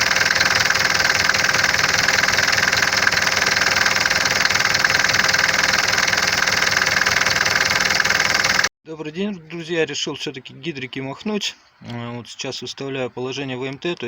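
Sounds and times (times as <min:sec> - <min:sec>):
diesel engine idling: 0:00.0 - 0:08.7
fast engine knocking: 0:00.0 - 0:08.7.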